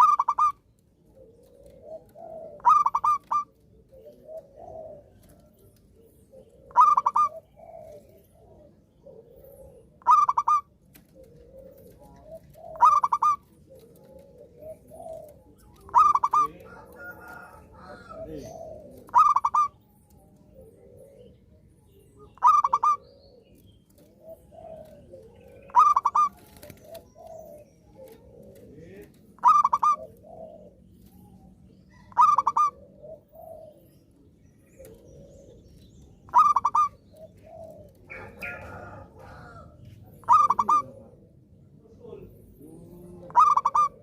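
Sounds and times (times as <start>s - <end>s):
dove cooing: 0.0s - 44.0s
soft low coos: 22.4s - 34.2s, 34.8s - 44.0s.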